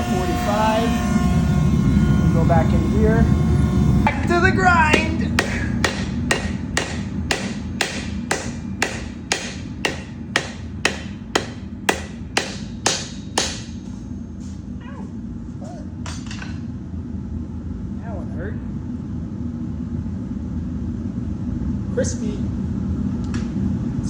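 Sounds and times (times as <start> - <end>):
steady low hum: 0.0 - 24.0
hammer ringing on anvil: 4.1 - 14.0.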